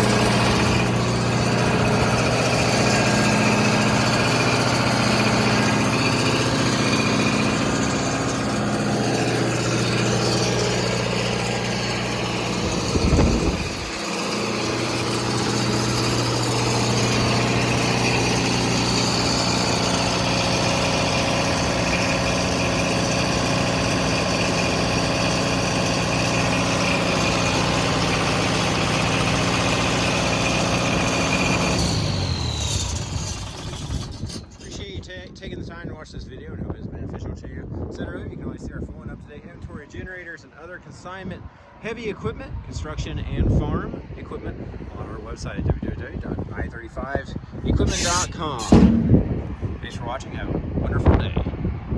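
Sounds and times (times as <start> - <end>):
diesel generator engine running: 0.0 - 35.3, 46.3 - 50.3
loud thump: 47.9 - 49.7.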